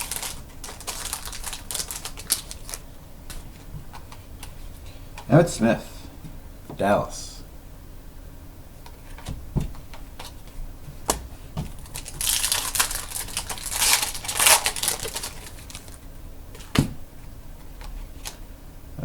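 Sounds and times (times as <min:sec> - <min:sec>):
packaging crinkly rustling: 0:00.0 - 0:04.6, 0:11.6 - 0:16.0.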